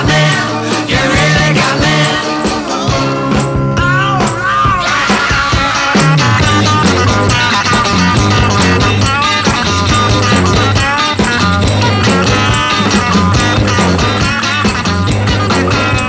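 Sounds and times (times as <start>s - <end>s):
electric guitar: 0.0s - 16.0s
rock music: 0.0s - 16.0s
steady bass beat: 2.9s - 14.4s.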